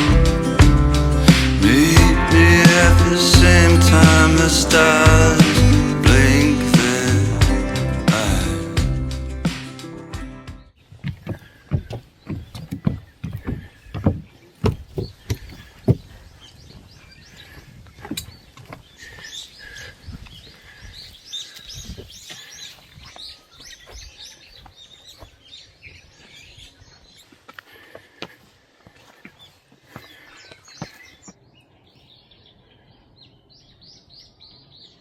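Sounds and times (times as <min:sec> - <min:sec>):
low thumps: 0:00.0 - 0:16.1
small birds chirping: 0:10.6 - 0:35.0.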